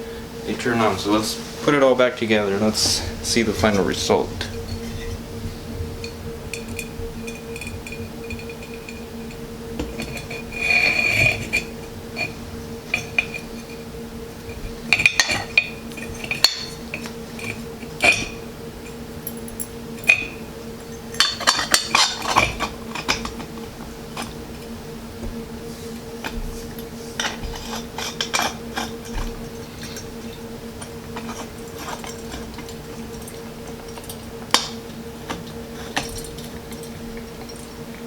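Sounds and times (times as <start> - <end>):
steady low hum: 0.0 - 38.0
metal and glass parts clinking: 27.2 - 37.7.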